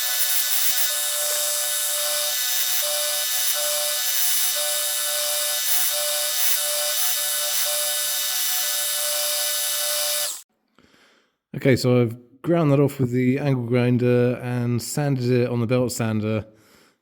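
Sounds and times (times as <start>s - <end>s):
power tool grinding steel: 0.0s - 10.4s.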